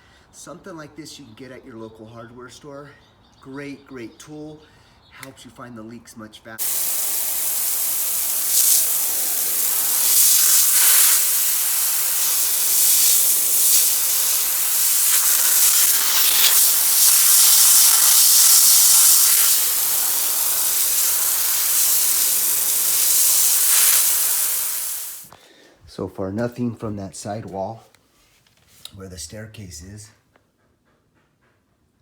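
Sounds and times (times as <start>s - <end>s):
water jet hissing from hose: 6.6s - 25.3s.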